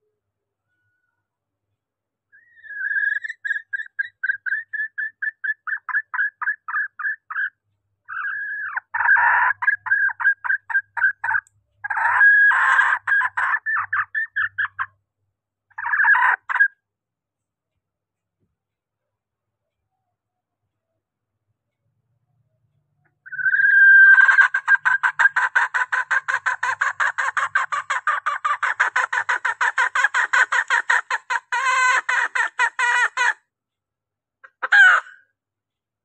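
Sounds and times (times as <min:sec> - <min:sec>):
hen clucking and cackling: 0:02.4 - 0:14.9, 0:15.7 - 0:16.8, 0:23.2 - 0:33.4, 0:34.4 - 0:35.3.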